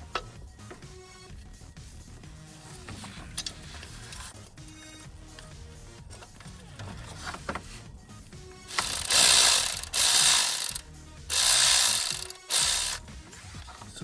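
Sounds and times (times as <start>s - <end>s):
ratchet wrench clicking: 8.7s - 13.0s.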